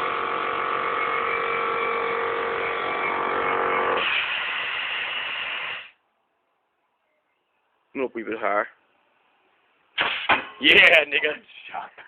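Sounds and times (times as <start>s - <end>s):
air compressor buzzing: 0.0s - 6.0s
air hissing: 3.9s - 6.0s.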